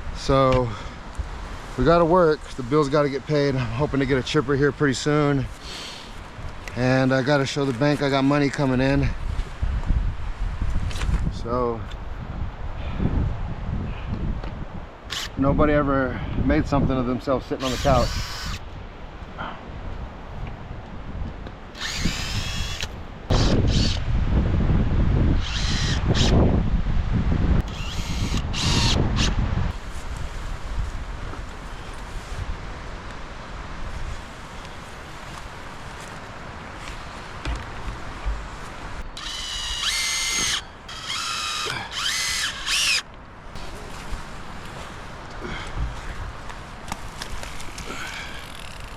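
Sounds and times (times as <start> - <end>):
wind buffeting microphone: 6.2 - 41.2, 43.5 - 48.9
small power tool motor whining: 17.6 - 18.6, 21.8 - 24.0, 25.4 - 26.4, 27.6 - 29.4, 39.0 - 43.0.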